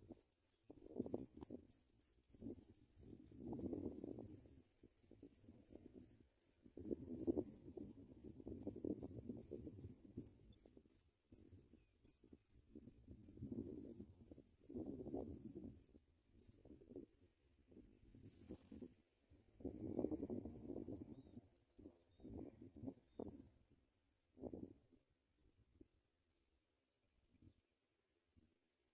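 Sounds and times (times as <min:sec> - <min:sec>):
cricket chirping: 0:00.1 - 0:06.6, 0:07.2 - 0:12.6.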